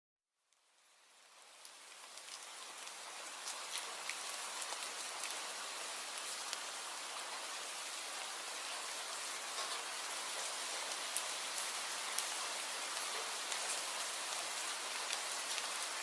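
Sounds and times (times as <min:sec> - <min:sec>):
steady rain falling: 0:00.5 - 0:16.0.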